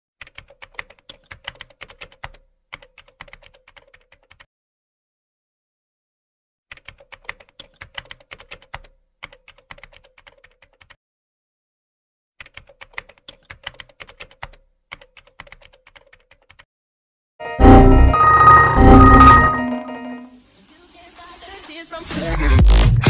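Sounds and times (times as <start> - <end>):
rapid keyboard typing clicks: 0.2 - 4.5, 6.7 - 11.0, 12.4 - 16.7.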